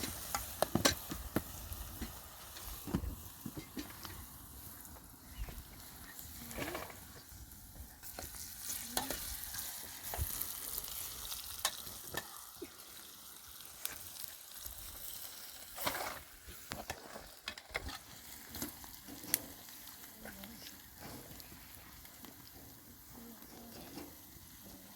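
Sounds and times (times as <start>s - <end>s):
food sizzling in a pan: 0.0s - 24.9s
utensil scraping a pan: 6.3s - 7.2s, 15.8s - 20.4s.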